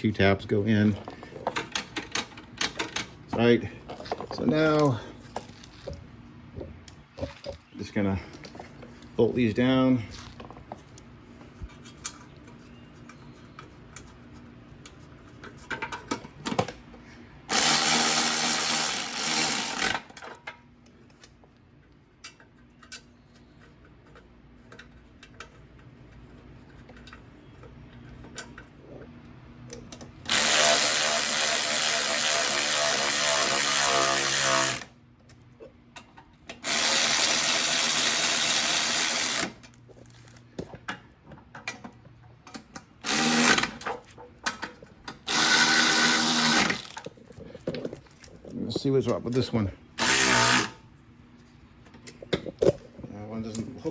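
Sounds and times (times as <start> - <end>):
power drill driving bolts: 17.5 - 20.3, 30.3 - 34.9, 36.6 - 39.6, 43.0 - 43.9, 45.2 - 47.1, 50.0 - 50.8.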